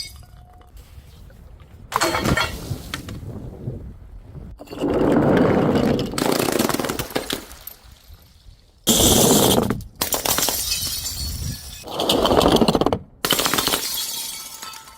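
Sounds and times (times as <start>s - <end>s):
glass bottles breaking: 8.9s - 12.3s, 13.3s - 14.9s
loud glass shatter: 10.0s - 11.9s, 13.3s - 14.9s.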